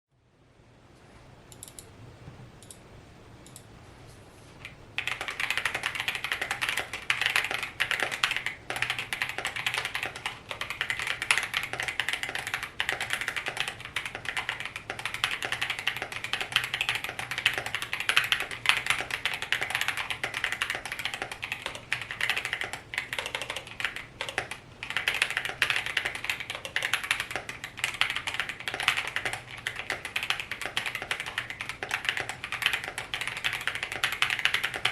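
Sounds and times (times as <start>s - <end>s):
typing on mechanical keyboard: 4.6s - 34.9s.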